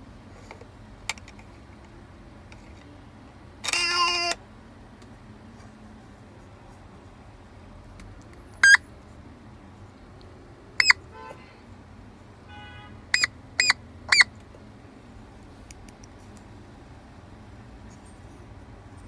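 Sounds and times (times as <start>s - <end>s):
toy electronic beeps: 8.6s - 8.8s, 10.8s - 11.0s, 13.2s - 14.3s.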